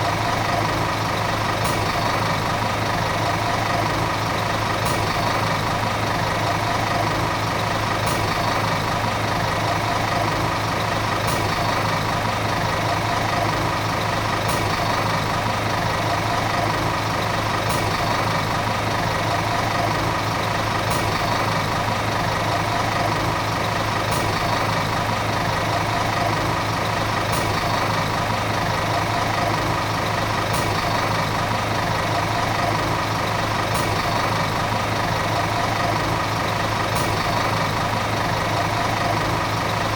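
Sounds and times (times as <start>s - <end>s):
bus diesel engine droning: 0.0s - 39.9s.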